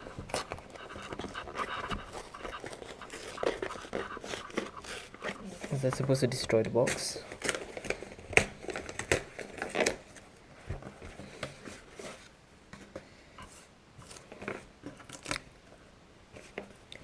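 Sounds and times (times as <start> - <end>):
cardboard packaging being opened: 0.0 - 6.2, 6.8 - 12.4, 14.0 - 15.5.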